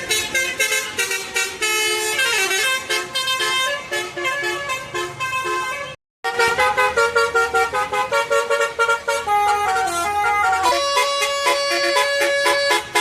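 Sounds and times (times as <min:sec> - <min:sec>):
multi-note air horn tune: 0:00.0 - 0:13.0.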